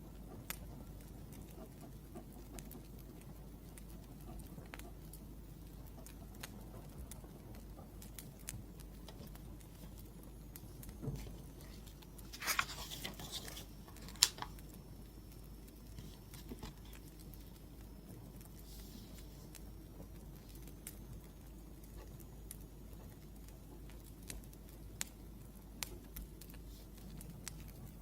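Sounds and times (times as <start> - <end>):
wood fire crackling: 0.0 - 28.0
scratchy rustle: 11.2 - 14.3.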